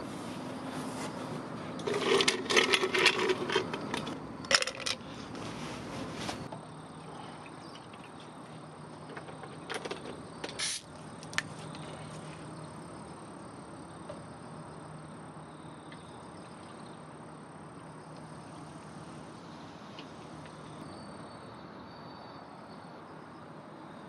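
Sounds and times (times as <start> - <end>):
soft outdoor hiss: 0.0 - 24.0
brief rustle: 5.1 - 6.5
high-pitched insect trill: 6.6 - 24.0.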